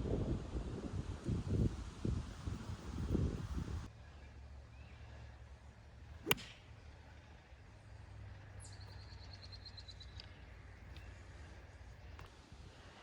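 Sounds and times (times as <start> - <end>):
golf club hitting ball: 6.2 - 6.6
bird singing trill: 8.6 - 10.4.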